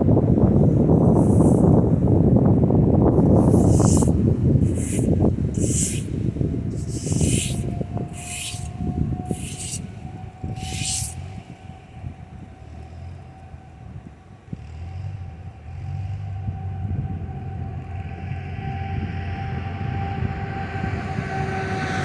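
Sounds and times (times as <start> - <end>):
low rumbling noise: 0.0 - 20.9
rake scraping through debris: 3.2 - 11.8.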